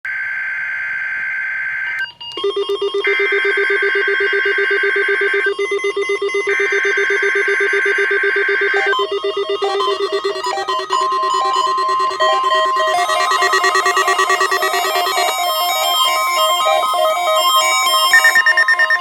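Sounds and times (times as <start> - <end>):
radio alert beeping: 8.7 - 19.0
two-tone digital data screech: 8.8 - 19.0.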